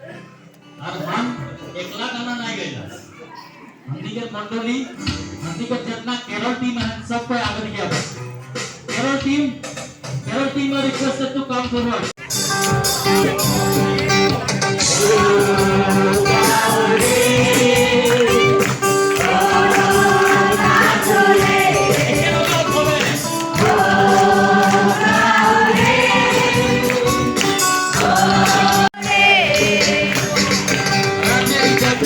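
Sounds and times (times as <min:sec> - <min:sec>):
musical accompaniment: 0:12.2 - 0:32.0
choir singing a carol: 0:14.8 - 0:30.8.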